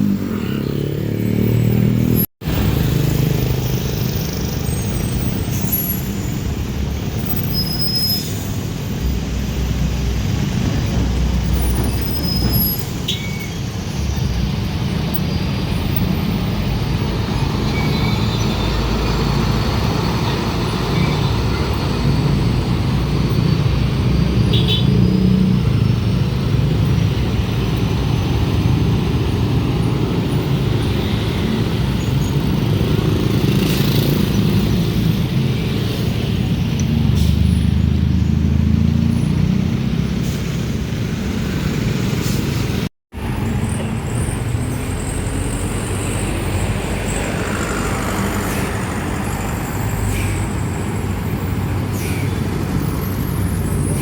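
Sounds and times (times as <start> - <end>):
diesel trucks rumbling: 0.0 - 54.0.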